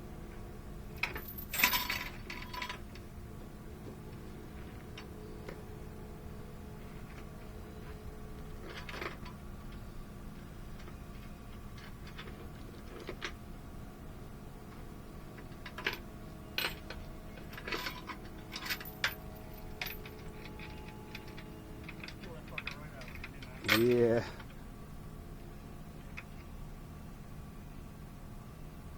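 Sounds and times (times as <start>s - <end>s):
truck engine idling: 2.8s - 27.9s
metallic clicks and clinks: 16.6s - 24.4s.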